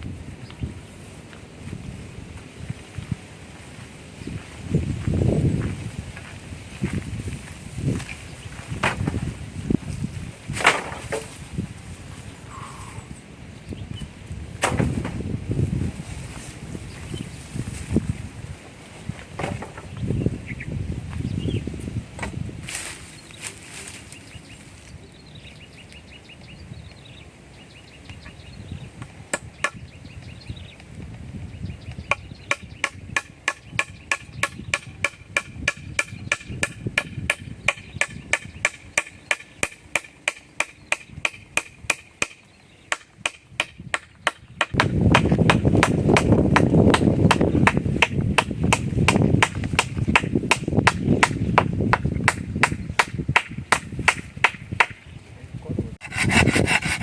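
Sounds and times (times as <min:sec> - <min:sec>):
tool striking wood: 0:32.1 - 0:55.0, 0:56.0 - 0:57.0.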